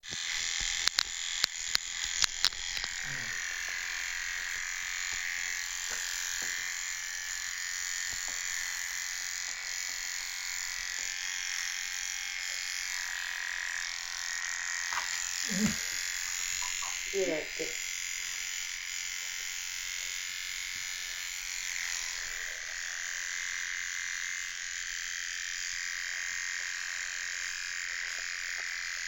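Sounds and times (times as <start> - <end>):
grooming tool motor buzzing: 0.0 - 29.0
sharp clicks: 0.6 - 3.0.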